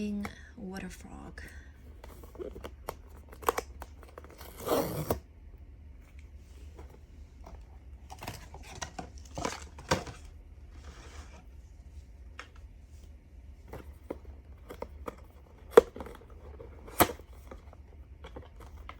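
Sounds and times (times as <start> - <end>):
cardboard and plastic crinkling: 1.9 - 5.2, 6.5 - 11.6, 13.6 - 18.9.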